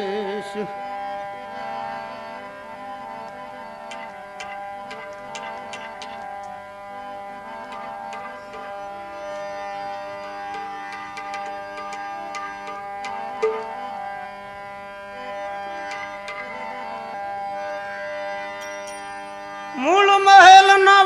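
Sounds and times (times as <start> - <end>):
sustained melodic accompaniment: 0.0 - 21.0
tabla strokes: 3.8 - 14.3, 15.8 - 16.6.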